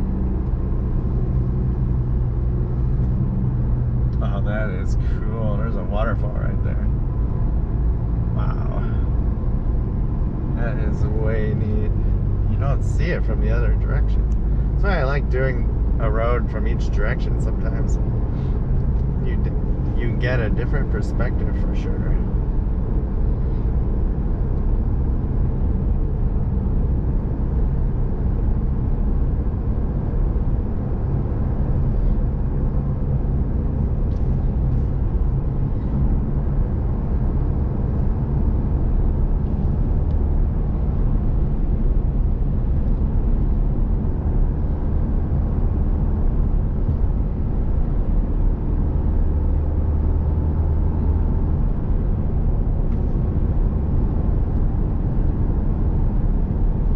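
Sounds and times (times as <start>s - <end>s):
vehicle engine hum: 0.0s - 56.9s.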